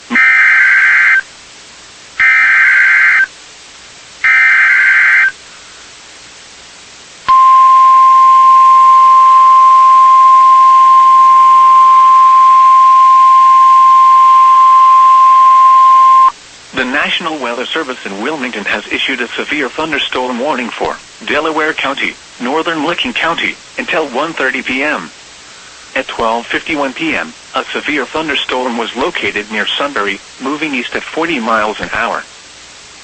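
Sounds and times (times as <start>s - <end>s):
steady warning alarm tone: 2.2s - 3.3s, 4.2s - 5.4s, 7.3s - 16.3s
warbling two-tone data bursts: 4.2s - 5.4s.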